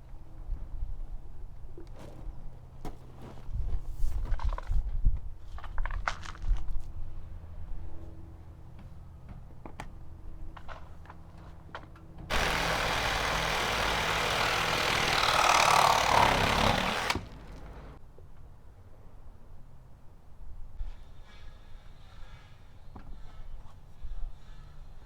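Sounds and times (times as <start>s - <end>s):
engine idling: 12.3s - 18.0s.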